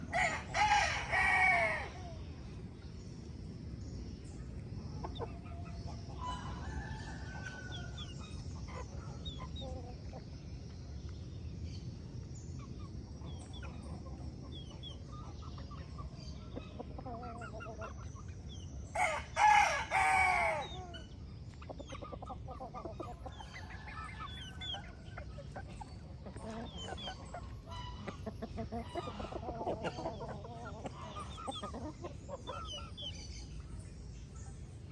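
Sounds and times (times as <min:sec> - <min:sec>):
rooster crowing: 0:00.1 - 0:02.0, 0:19.0 - 0:20.8
hens clucking: 0:04.5 - 0:10.3, 0:13.3 - 0:18.4, 0:19.0 - 0:33.8.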